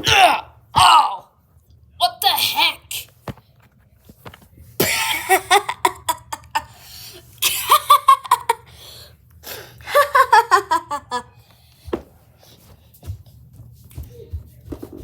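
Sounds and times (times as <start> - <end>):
person laughing: 4.8 - 6.7, 7.4 - 8.7, 9.9 - 11.4.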